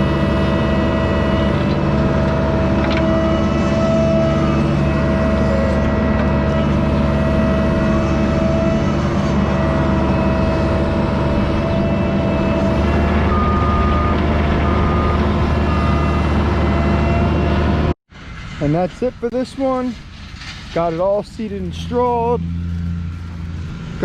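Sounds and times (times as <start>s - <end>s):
construction equipment engine running: 0.0s - 24.0s
backup alarm beeps: 12.4s - 17.5s.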